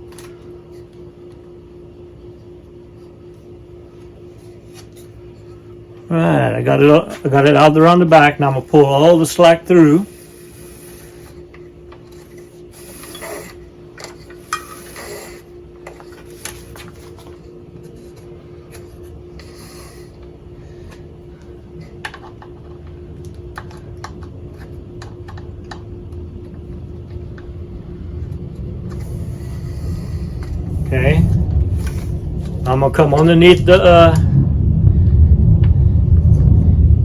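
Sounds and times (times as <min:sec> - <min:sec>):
steady hum: 0:00.0 - 0:37.0
low rumble: 0:20.4 - 0:37.0.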